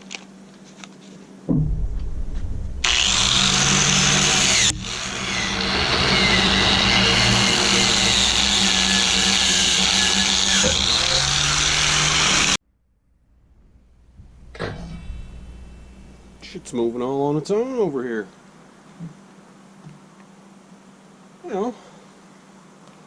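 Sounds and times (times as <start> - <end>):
transformer hum: 1.5 - 17.2.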